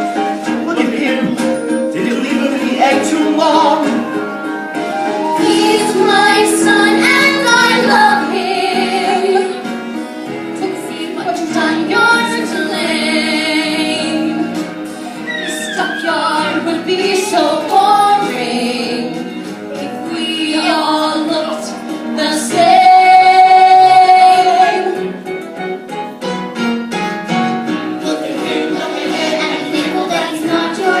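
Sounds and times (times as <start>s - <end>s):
instrumental accompaniment: 0.0s - 31.0s
woman singing a ballad: 15.6s - 24.8s.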